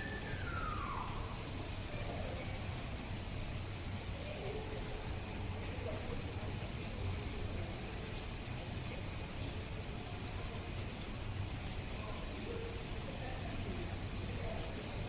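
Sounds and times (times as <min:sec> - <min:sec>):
background hiss: 0:00.0 - 0:02.5
faint distant voices: 0:00.0 - 0:15.0.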